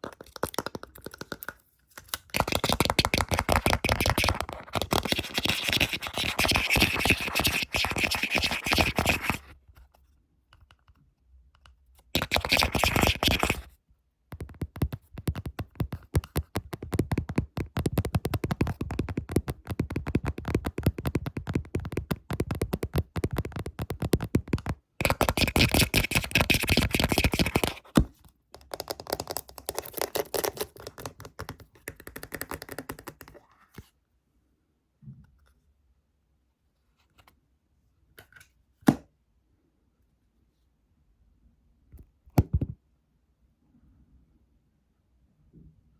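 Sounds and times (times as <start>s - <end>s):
fast scratching: 2.3s - 9.5s, 12.2s - 13.7s, 14.4s - 28.0s
rapid tapping: 14.4s - 27.7s.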